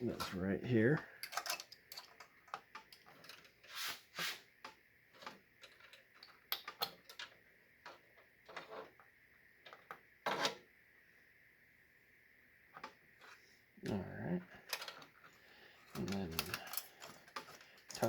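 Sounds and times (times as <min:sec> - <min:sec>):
cable clicks and rustles: 0:00.0 - 0:03.7, 0:04.6 - 0:10.6, 0:14.6 - 0:18.0.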